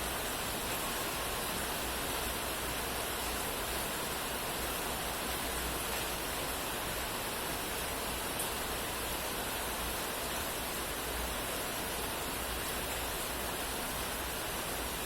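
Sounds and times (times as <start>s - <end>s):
steady rain falling: 0.0s - 15.0s.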